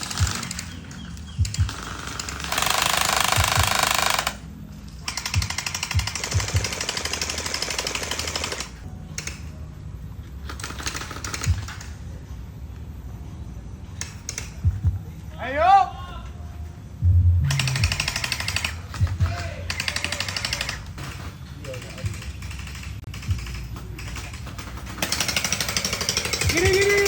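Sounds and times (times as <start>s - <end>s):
low thumps: 17.0s - 19.3s
gel blasters firing bursts: 17.1s - 19.2s.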